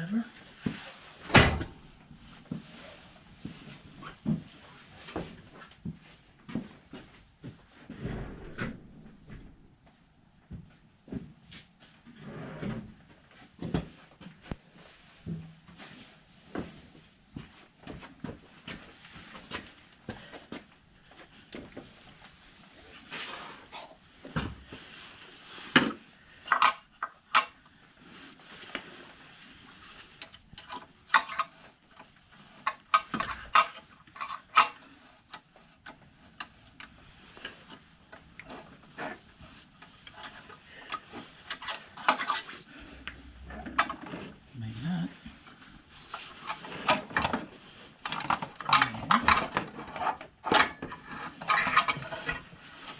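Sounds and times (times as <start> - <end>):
metal tools clinking and scraping: 32.6 - 34.8, 40.0 - 44.1, 48.0 - 52.5.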